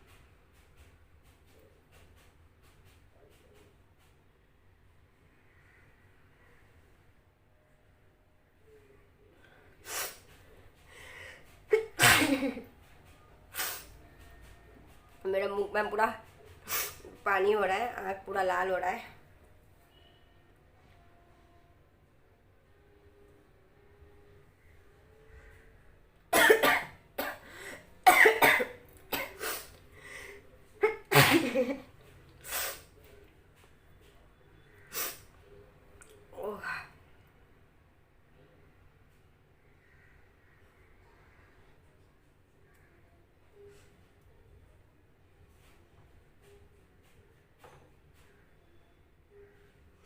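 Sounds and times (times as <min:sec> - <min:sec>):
woman coughing hard: 0:11.7 - 0:12.6, 0:26.3 - 0:29.7, 0:30.8 - 0:31.8.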